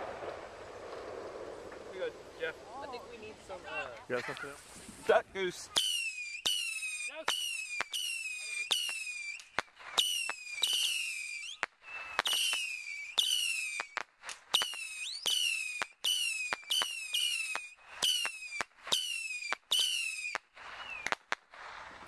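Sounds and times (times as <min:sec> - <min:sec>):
firework cracks: 0:00.0 - 0:03.7, 0:05.8 - 0:22.0
whistling fireworks: 0:00.0 - 0:03.9, 0:05.7 - 0:22.0.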